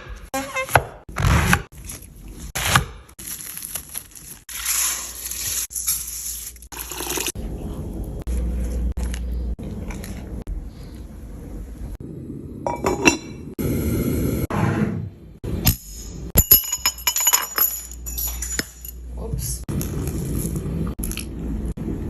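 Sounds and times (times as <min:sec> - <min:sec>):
glassware and dishes clinking: 0:12.7 - 0:13.4, 0:16.4 - 0:19.0.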